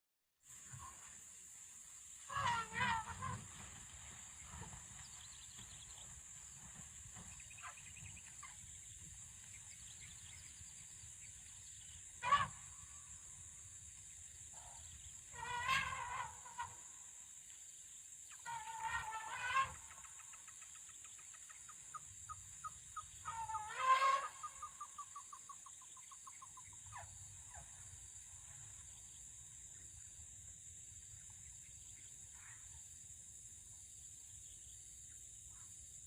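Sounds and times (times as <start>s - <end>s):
steady high-pitched hiss: 0.4s - 36.0s
elephants trumpeting: 2.3s - 3.5s, 15.3s - 16.7s.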